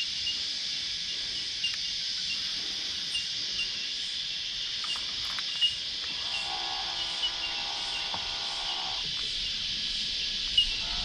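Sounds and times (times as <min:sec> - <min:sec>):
cicadas shrilling: 0:00.0 - 0:11.0
small chirps: 0:04.8 - 0:09.3.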